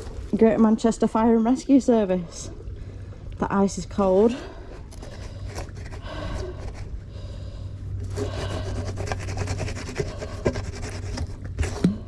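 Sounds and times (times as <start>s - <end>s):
hands scraping plastic sign: 8.1s - 12.0s.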